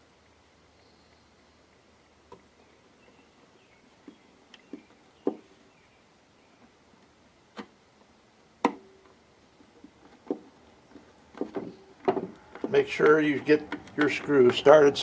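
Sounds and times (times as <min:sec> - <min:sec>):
small hardware clicks and knocks: 0:09.8 - 0:15.0.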